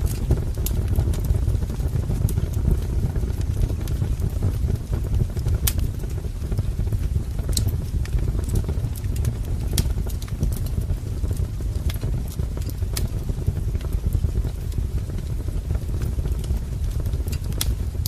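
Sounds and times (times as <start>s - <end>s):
wood fire crackling: 0.0s - 18.0s
logs popping and snapping: 7.3s - 13.9s.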